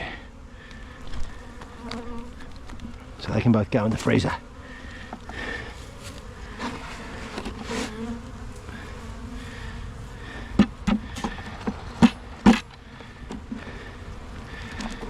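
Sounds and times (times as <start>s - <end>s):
bees buzzing: 0.0s - 15.0s
sharp knocks: 10.6s - 12.7s.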